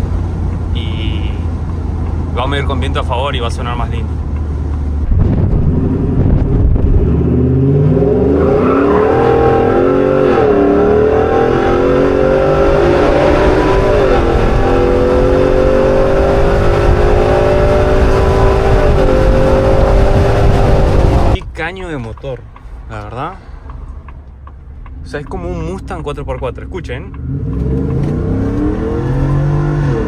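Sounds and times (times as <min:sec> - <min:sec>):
loud engine accelerating hard: 0:04.4 - 0:21.4, 0:27.1 - 0:30.0.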